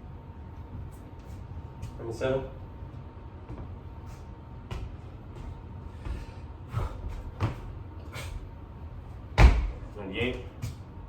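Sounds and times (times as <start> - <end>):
hands and feet thudding on floor: 4.6 - 7.8, 9.3 - 10.9.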